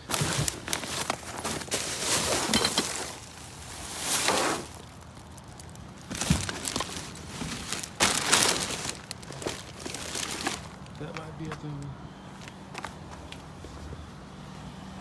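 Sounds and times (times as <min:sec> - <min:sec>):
junk rustling and clattering: 0:00.0 - 0:11.6.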